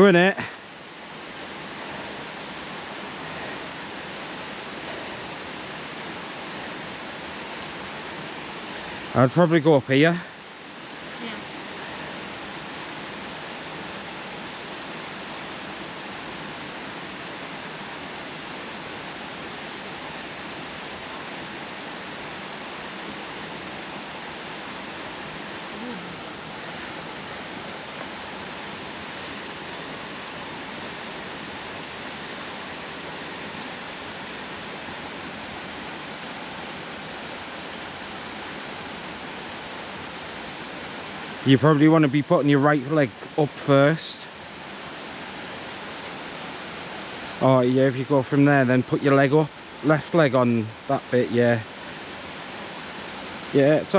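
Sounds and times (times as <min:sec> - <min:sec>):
waterfall rushing: 0:00.0 - 0:53.9.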